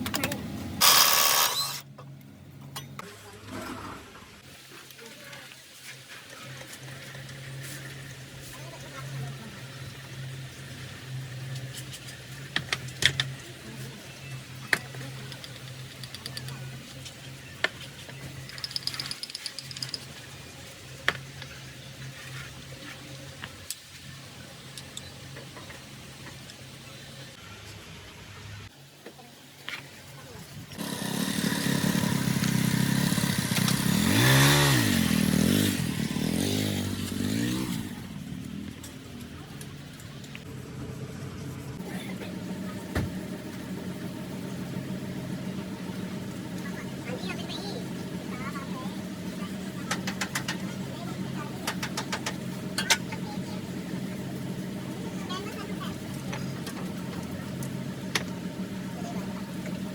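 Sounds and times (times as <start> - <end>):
engine revving: 30.8 - 39.2.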